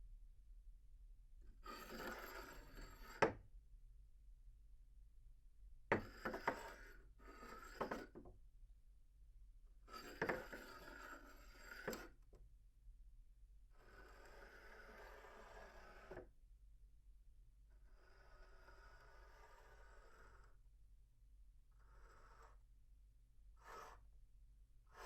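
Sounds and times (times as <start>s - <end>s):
glass cup scraping across table: 1.6s - 3.4s, 5.9s - 8.3s, 9.9s - 12.1s
glass knocking on tabletop: 5.9s - 6.6s.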